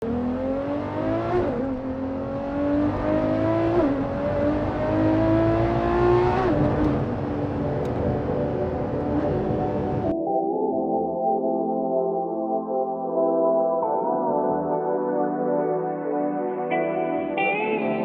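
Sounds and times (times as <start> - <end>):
car engine accelerating hard: 0.0 - 10.1.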